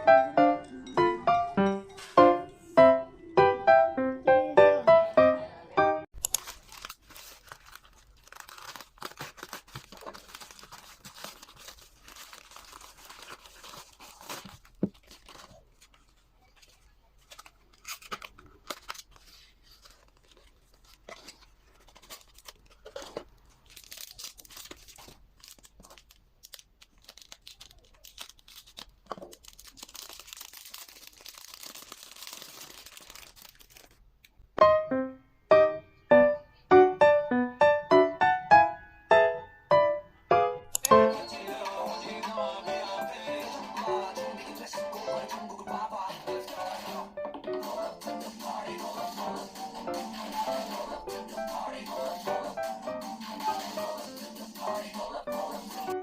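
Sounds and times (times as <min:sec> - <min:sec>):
packaging tearing and rustling: 0:06.2 - 0:34.1
sharp clicks: 0:40.7 - 0:41.0.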